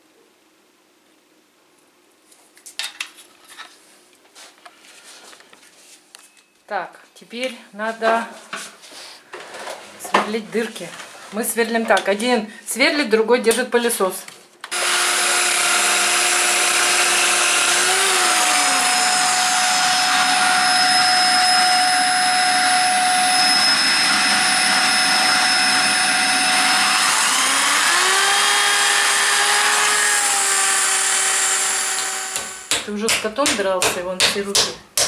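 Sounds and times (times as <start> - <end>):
electric drill boring into brick: 14.7 - 32.7
vacuum cleaner running: 14.7 - 32.7.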